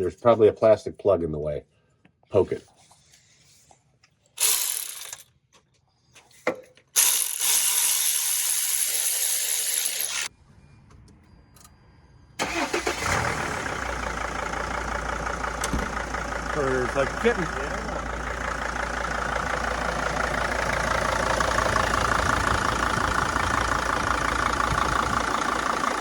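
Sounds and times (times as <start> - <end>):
diesel engine starting and idling: 12.3 - 26.0.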